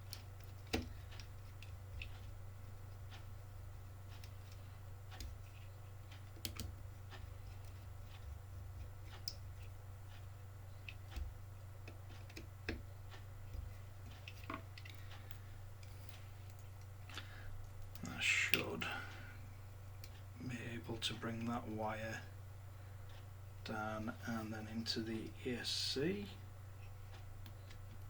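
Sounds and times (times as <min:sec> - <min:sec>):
low electrical hum: 0:00.0 - 0:28.0.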